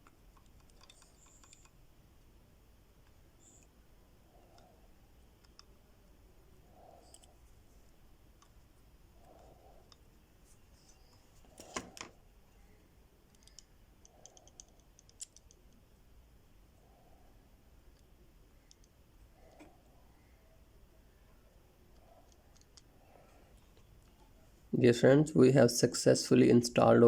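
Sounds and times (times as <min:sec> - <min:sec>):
small repair tools clicking: 0:13.3 - 0:15.6.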